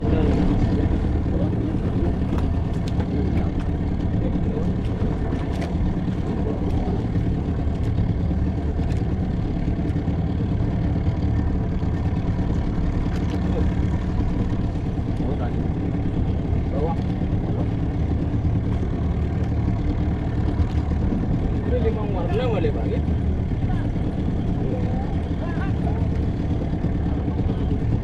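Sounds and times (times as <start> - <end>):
boat engine droning: 0.0 - 28.0.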